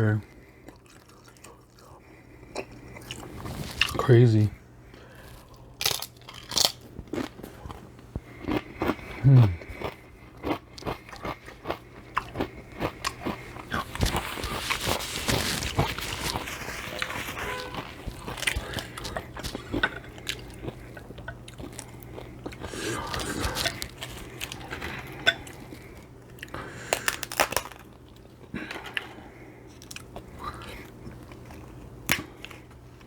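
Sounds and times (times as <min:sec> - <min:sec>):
close chewing with wet mouth clicks: 0:00.6 - 0:04.0, 0:08.4 - 0:24.8.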